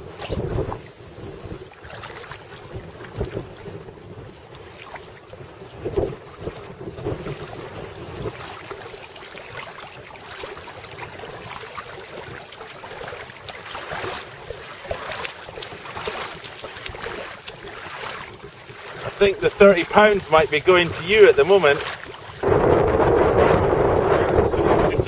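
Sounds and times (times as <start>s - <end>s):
water sloshing and splashing: 0.0s - 25.0s
wind buffeting microphone: 2.6s - 4.5s, 5.2s - 8.9s, 14.0s - 25.0s.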